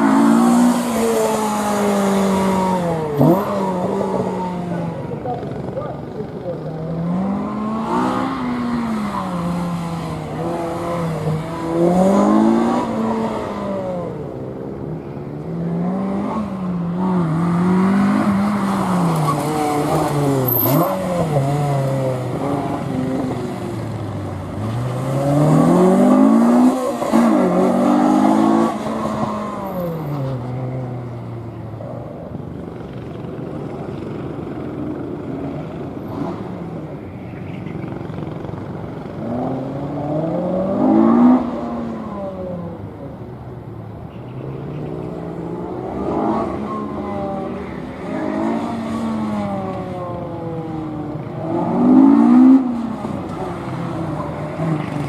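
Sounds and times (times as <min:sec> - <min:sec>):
car engine revving hard: 0:00.0 - 0:04.7, 0:24.6 - 0:29.6.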